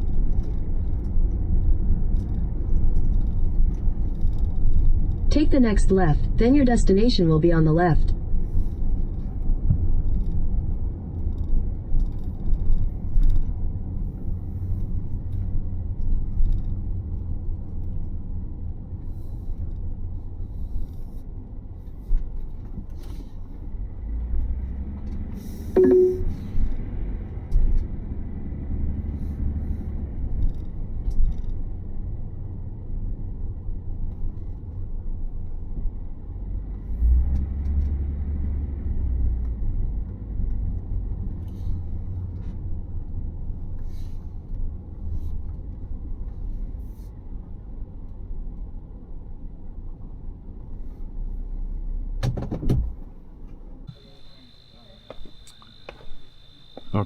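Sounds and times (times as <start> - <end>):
engine and tyre rumble: 0.0 - 57.0.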